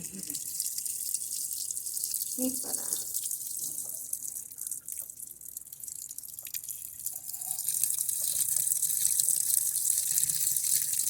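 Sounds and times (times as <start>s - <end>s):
water filling washing machine: 0.0s - 4.2s, 6.9s - 11.0s.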